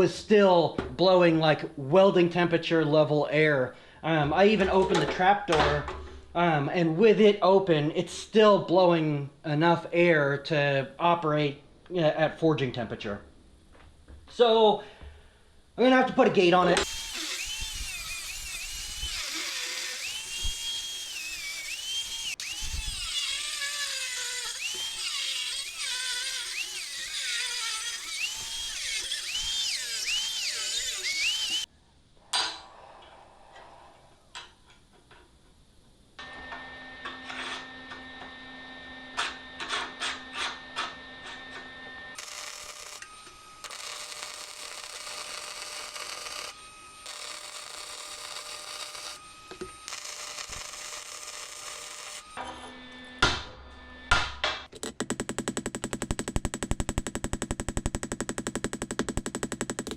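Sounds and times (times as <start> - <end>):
electric drill motor whine: 16.8 - 31.7, 36.2 - 39.6, 40.2 - 54.1.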